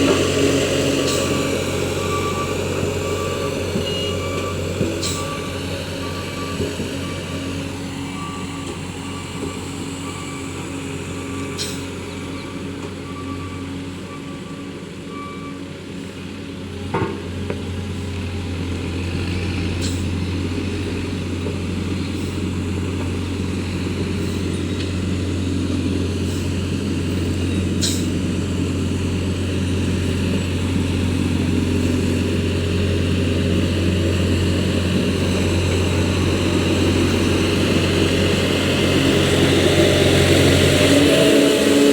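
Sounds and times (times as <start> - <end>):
reversing alarm beeping: 0.0 - 16.1
diesel engine running: 0.0 - 41.9.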